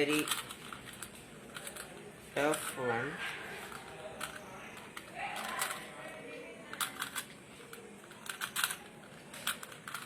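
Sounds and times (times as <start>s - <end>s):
puzzle cube clicking as turned: 0.1s - 2.7s, 6.7s - 10.0s.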